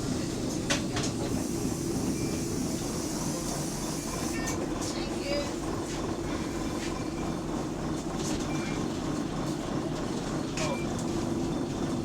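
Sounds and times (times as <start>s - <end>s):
bus engine and road rumble: 0.0s - 12.0s.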